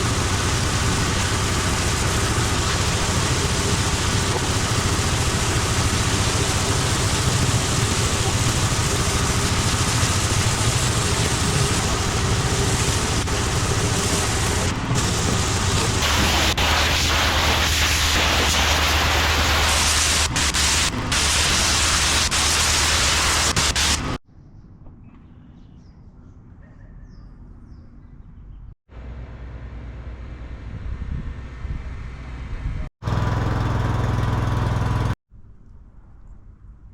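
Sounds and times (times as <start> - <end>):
pressure washer engine hum: 0.0 - 24.2, 28.9 - 35.2
water spraying on concrete: 0.0 - 24.2.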